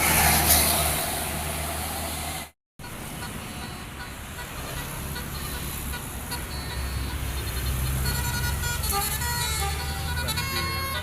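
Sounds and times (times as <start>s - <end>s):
bus engine rumbling: 0.0s - 11.0s
multi-tone horn playing a tune: 3.2s - 11.0s.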